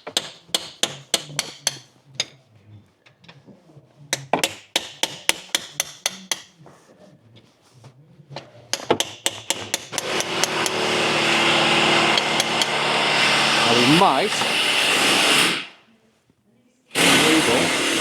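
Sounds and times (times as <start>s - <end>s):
hammer striking metal pry bar: 0.0s - 1.9s, 4.2s - 6.5s, 8.8s - 10.8s
hissing humming machine noise: 10.2s - 15.4s.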